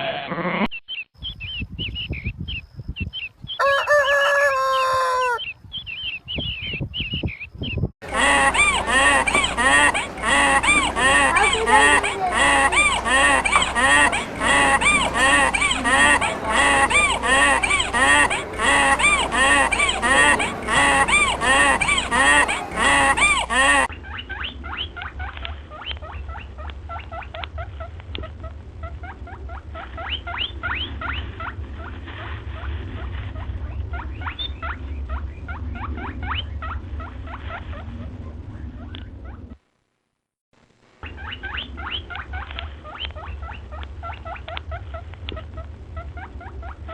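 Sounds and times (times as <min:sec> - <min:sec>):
geese honking: 0:03.6 - 0:05.4, 0:08.0 - 0:37.9
low hum: 0:08.0 - 0:46.9
rodents squeaking: 0:08.2 - 0:31.9, 0:41.0 - 0:46.9.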